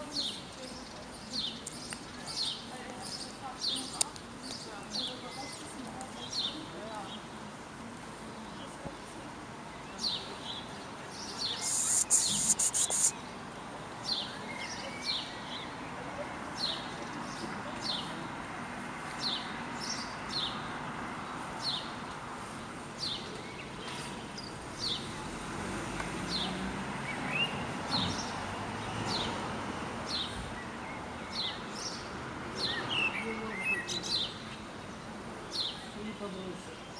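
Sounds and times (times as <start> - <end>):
small bird chirping: 11.4 - 13.2
background hiss: 11.4 - 13.8.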